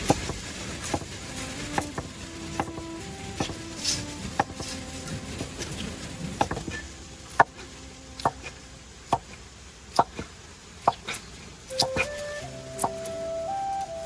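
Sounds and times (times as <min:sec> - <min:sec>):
soft flute music: 0:00.8 - 0:08.8, 0:11.7 - 0:14.0.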